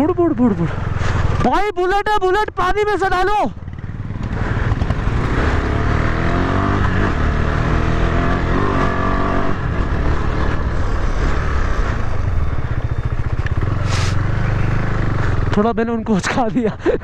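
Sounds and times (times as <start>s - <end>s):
motorcycle engine revving: 0.0s - 1.8s, 2.7s - 16.5s
short rush of noise: 13.8s - 14.3s.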